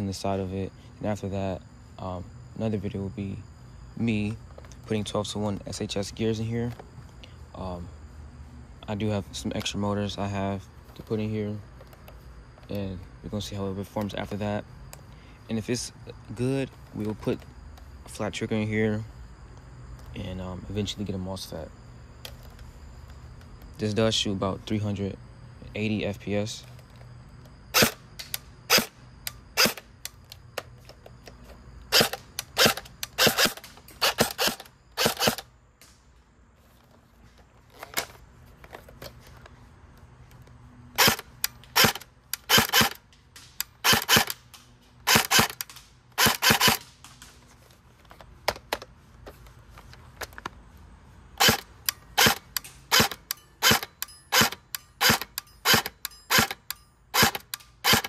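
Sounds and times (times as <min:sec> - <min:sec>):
electric airsoft gun firing: 0:27.7 - 0:29.9, 0:31.9 - 0:35.5, 0:41.0 - 0:47.3, 0:51.4 - 0:58.0.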